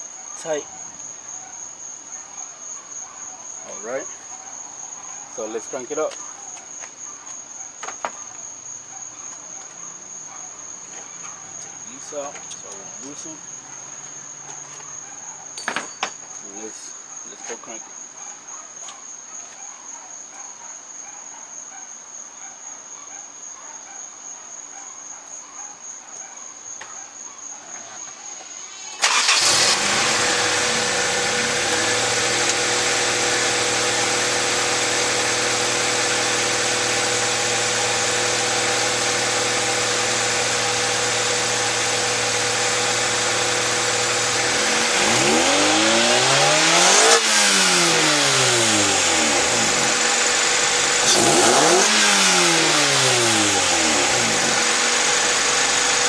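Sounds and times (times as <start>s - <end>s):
crickets chirping: 0.0s - 56.0s
car engine starting and idling: 28.5s - 56.0s.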